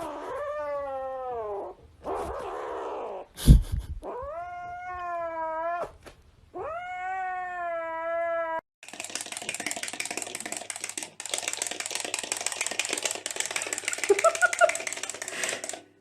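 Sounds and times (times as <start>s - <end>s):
cat yowling: 6.6s - 8.6s.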